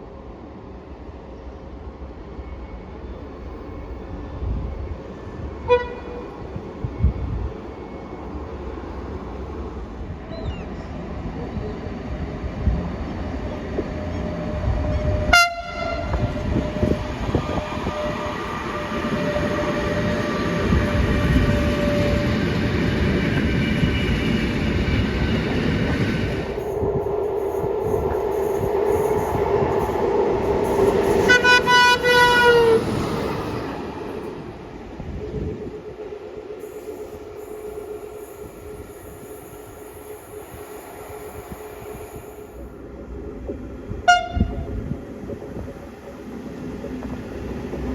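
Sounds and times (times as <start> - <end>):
train wheels rumbling on track: 0.9 - 47.9
train horn: 5.6 - 6.5, 14.9 - 17.0, 31.2 - 32.9, 44.0 - 44.8.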